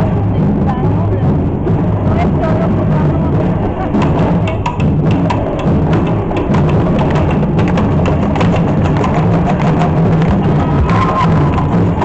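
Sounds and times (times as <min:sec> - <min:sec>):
heavy bass: 0:00.0 - 0:12.0
salsa music: 0:08.2 - 0:12.0.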